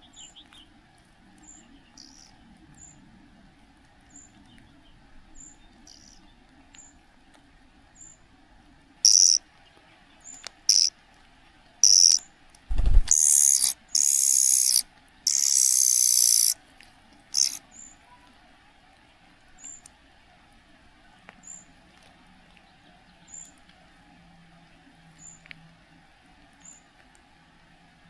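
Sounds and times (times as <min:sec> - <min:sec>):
young cuckoo begging calls: 0:09.1 - 0:09.4, 0:10.7 - 0:10.9, 0:11.8 - 0:16.6, 0:17.4 - 0:17.6.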